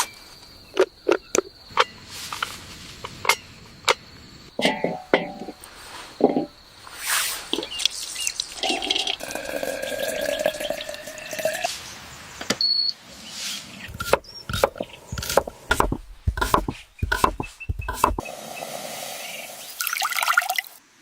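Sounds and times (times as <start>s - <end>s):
water pouring: 8.4s - 11.7s, 19.8s - 20.8s
sharp knocks and clatters: 13.9s - 18.2s.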